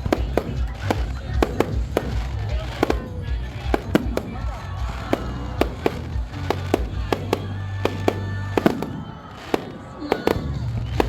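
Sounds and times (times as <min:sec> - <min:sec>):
music with low bass: 0:00.0 - 0:09.6
fireworks bangs and cracks: 0:00.0 - 0:11.0.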